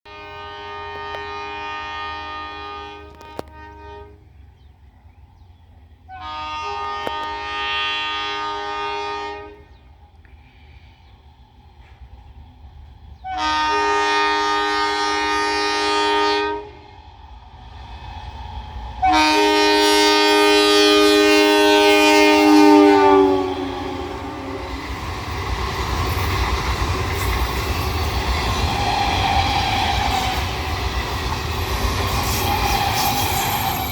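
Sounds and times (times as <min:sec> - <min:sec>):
train horn blasts: 0:00.0 - 0:04.4, 0:06.1 - 0:09.9, 0:13.2 - 0:16.9, 0:19.0 - 0:24.9
train passing: 0:00.1 - 0:33.9.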